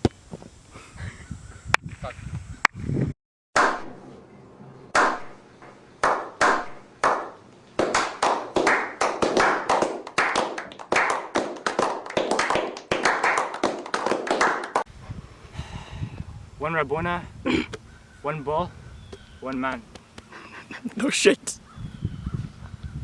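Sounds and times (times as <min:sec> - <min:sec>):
hand clapping: 0:06.0 - 0:07.3, 0:07.9 - 0:14.9, 0:19.5 - 0:20.3.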